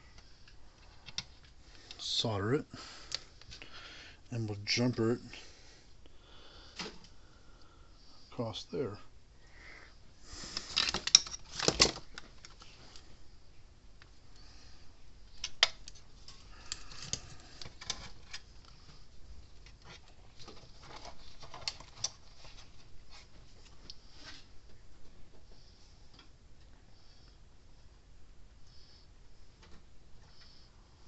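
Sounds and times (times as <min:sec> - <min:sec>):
small clicks and rustles: 0:00.0 - 0:02.0, 0:10.5 - 0:13.2, 0:15.3 - 0:26.7
tools scraping and clicking: 0:10.6 - 0:12.0.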